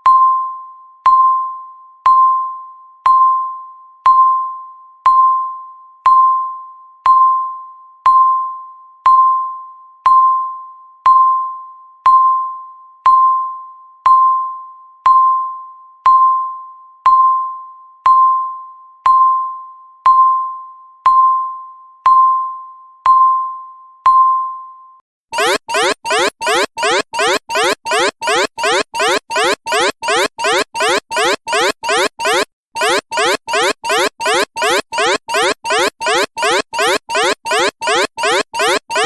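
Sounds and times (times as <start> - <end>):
countdown timer beeps: 25.4 - 39.0.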